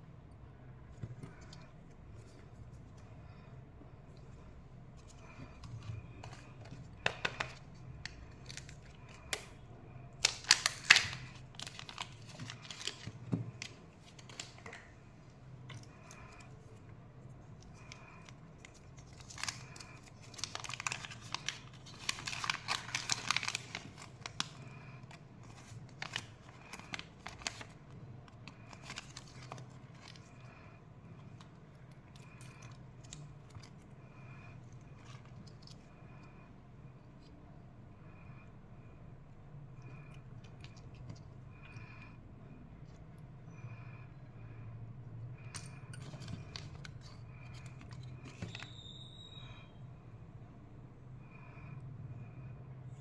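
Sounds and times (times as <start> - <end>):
wrapper tearing and crinkling: 10.2 - 14.6, 18.9 - 24.6, 25.4 - 27.8, 28.5 - 30.3.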